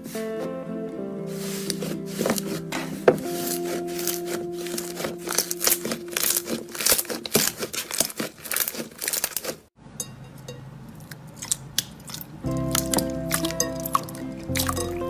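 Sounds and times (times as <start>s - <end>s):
background music: 0.0s - 7.1s, 12.4s - 15.0s
slime crackling and popping: 3.4s - 9.7s, 11.1s - 15.0s.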